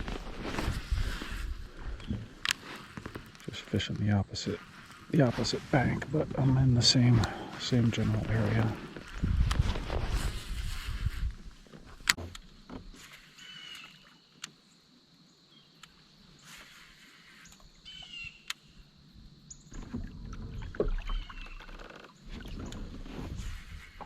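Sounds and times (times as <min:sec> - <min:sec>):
water against hull: 0:00.0 - 0:14.2, 0:19.2 - 0:24.0
birds chirping: 0:01.2 - 0:02.7, 0:15.4 - 0:18.8.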